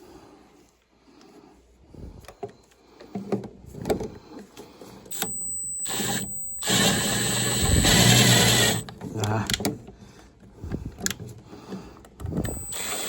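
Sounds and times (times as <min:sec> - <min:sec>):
cordless drill whirring: 0:05.1 - 0:08.8, 0:12.2 - 0:13.0.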